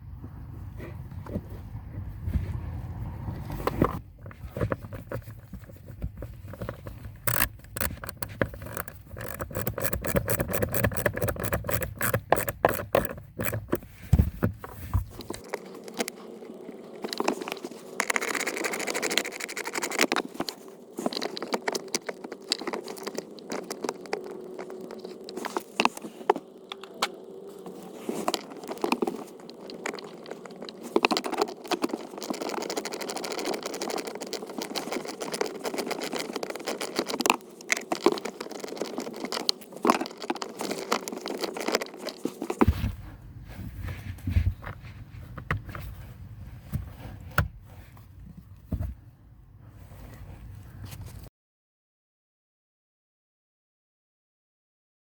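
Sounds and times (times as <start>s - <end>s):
small parts scraping and clicking: 3.5s - 46.0s.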